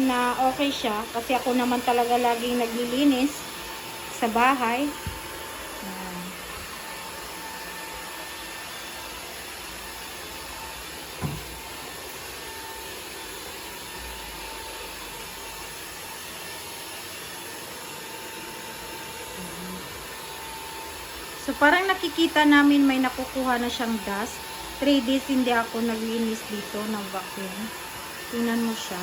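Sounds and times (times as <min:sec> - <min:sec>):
stick vacuum cleaner running: 0:00.0 - 0:29.0
single knock: 0:11.2 - 0:11.6.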